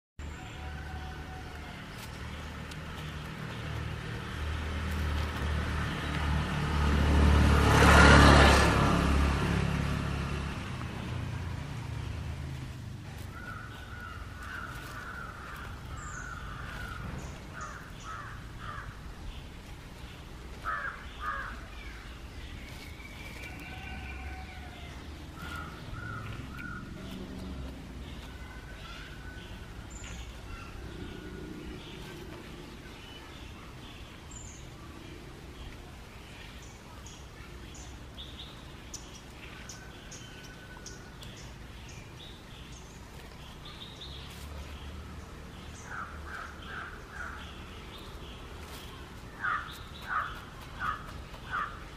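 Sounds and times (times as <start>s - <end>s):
road vehicle passing: 0.2s - 51.9s
birds calling: 10.9s - 51.9s.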